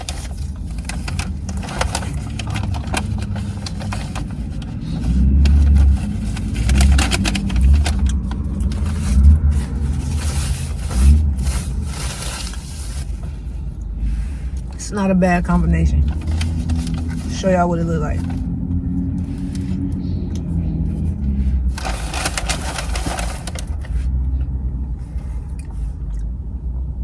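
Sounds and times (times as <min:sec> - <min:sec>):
person chewing food: 0:24.3 - 0:26.4.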